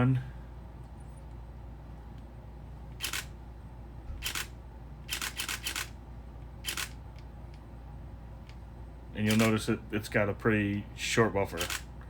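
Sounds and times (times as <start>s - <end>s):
camera shutter clacks: 3.0s - 3.3s, 4.2s - 6.0s, 6.6s - 7.0s, 9.3s - 9.6s, 11.6s - 11.9s.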